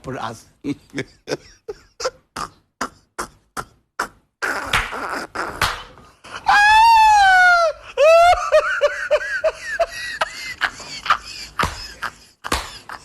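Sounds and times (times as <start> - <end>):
woman laughing: 0.7 - 3.0, 7.6 - 13.0
woman squealing: 6.5 - 8.4.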